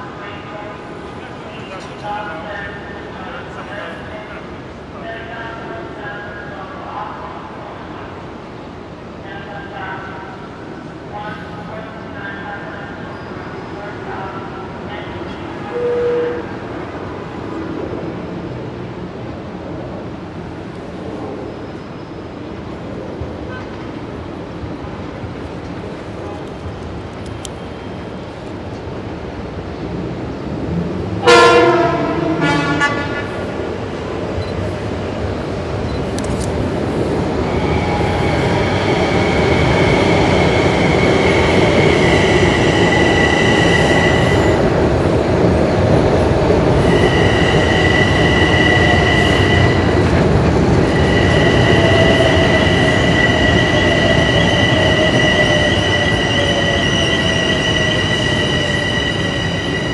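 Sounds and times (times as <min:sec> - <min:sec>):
wheels rumbling on rail: 0:15.3 - 0:59.9
train horn: 0:15.6 - 0:16.6, 0:31.2 - 0:33.5
high wheel squeal: 0:37.5 - 0:44.7, 0:46.7 - 0:59.9.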